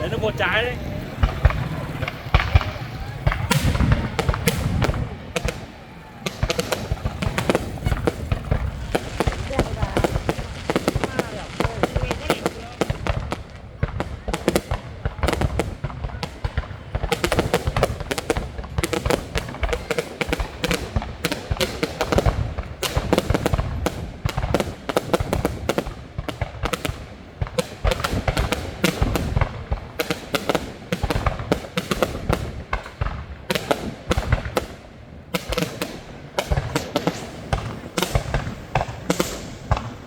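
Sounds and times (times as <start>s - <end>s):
heavy low thumps: 0.0s - 5.6s
fireworks bangs and crackles: 0.0s - 40.0s.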